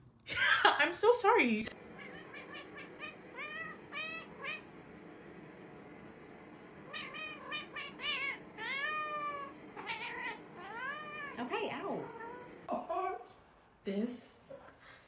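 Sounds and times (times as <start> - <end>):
cat meowing: 2.0 - 4.6, 6.9 - 12.5.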